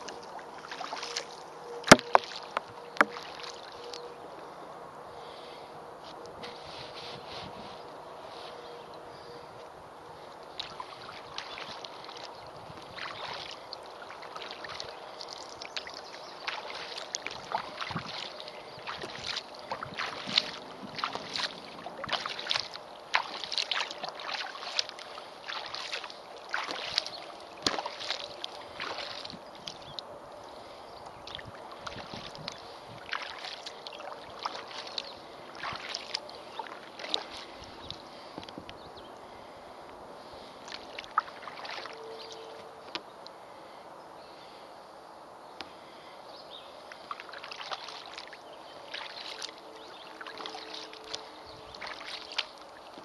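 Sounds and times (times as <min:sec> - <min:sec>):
paddle splashing in water: 0:00.0 - 0:04.1, 0:10.2 - 0:38.5, 0:40.2 - 0:42.7, 0:46.9 - 0:53.0
water dripping: 0:00.0 - 0:04.1, 0:10.3 - 0:30.1, 0:31.2 - 0:38.5, 0:46.9 - 0:53.0.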